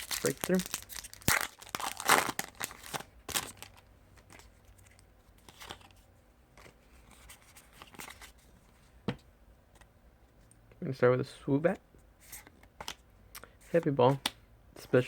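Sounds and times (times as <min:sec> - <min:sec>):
foil wrapper crinkling and tearing: 0:00.0 - 0:05.6.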